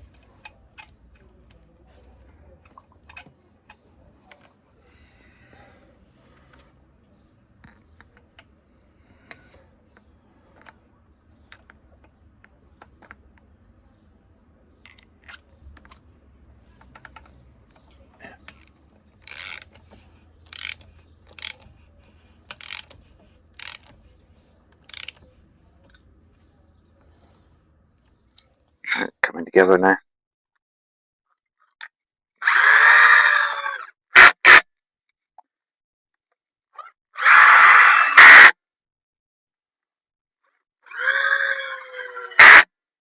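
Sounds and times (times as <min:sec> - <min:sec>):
metal parts clicking: 0:07.6 - 0:27.6
ratchet wrench clicking: 0:16.7 - 0:26.0.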